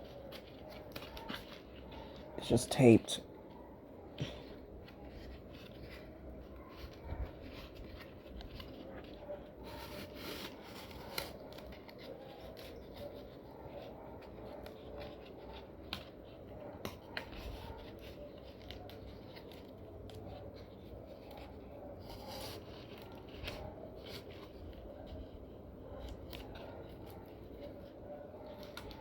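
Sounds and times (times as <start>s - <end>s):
cardboard scratching and rubbing: 4.9s - 15.9s.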